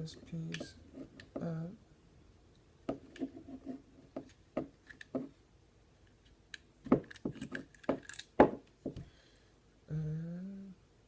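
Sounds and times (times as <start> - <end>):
small pistol parts clicking: 6.5 - 8.4.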